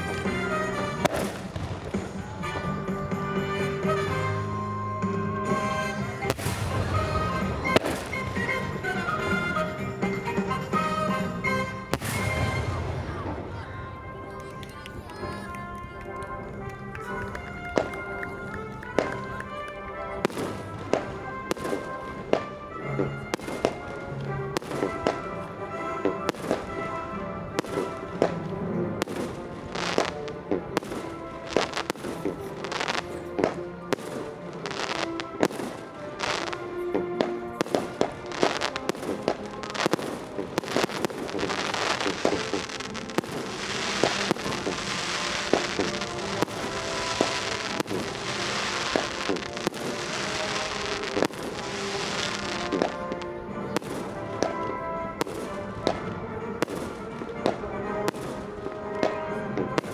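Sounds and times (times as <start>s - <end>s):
fireworks bangs: 0.0s - 59.9s
music playing: 0.0s - 59.9s
dense steady hiss: 41.2s - 53.4s.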